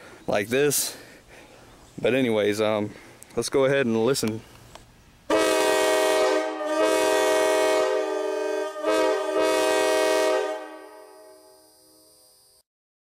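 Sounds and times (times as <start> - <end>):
horn echo: 5.3 - 11.6
locomotive horn blasts: 5.3 - 11.8.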